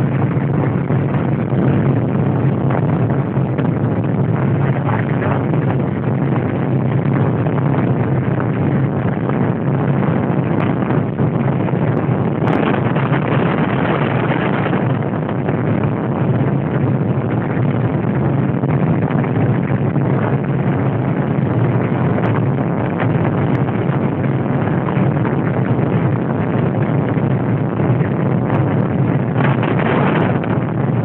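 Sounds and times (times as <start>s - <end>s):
helicopter engine and rotor drone: 0.0s - 8.9s.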